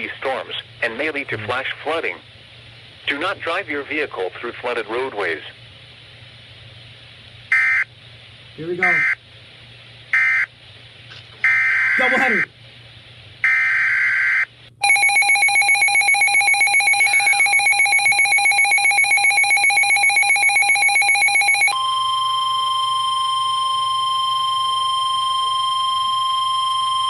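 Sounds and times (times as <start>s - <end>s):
steady warning alarm tone: 7.5s - 7.9s, 8.8s - 9.2s, 10.1s - 10.5s, 11.4s - 12.5s, 13.4s - 27.0s
rapidly pulsing alert beep: 11.5s - 12.5s, 13.5s - 27.0s.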